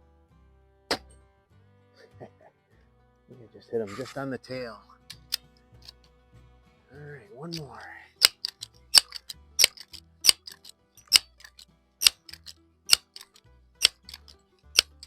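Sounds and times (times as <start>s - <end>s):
air rifle pump lever clacking: 5.1s - 6.0s, 7.5s - 15.0s
small clicks: 5.1s - 6.1s, 7.5s - 15.0s.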